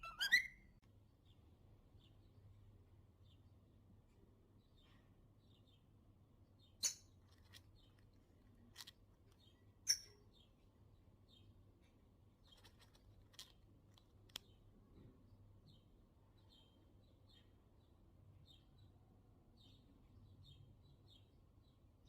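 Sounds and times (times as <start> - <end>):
parrot chirping: 0.0 - 0.7, 9.8 - 10.2.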